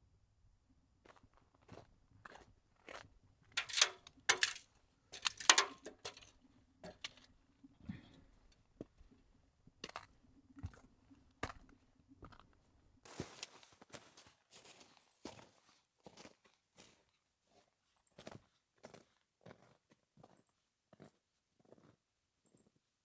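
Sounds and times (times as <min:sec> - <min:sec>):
small clicks and knocks: 0:03.6 - 0:04.6, 0:05.2 - 0:06.3.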